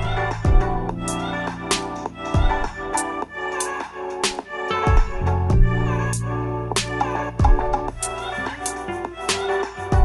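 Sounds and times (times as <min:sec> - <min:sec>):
sustained keyboard chords: 0:00.0 - 0:09.3.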